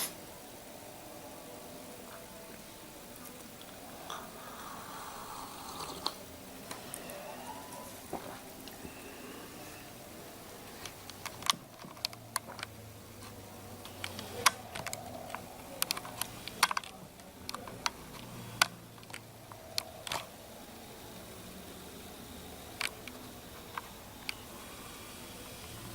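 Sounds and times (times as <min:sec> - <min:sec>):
light irregular clicks and taps: 0:10.7 - 0:20.3.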